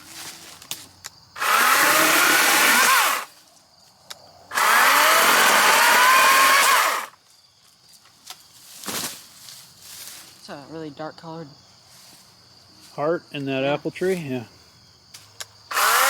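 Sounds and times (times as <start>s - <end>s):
chainsaw cutting wood: 1.4s - 3.3s, 4.5s - 7.2s, 15.7s - 16.0s.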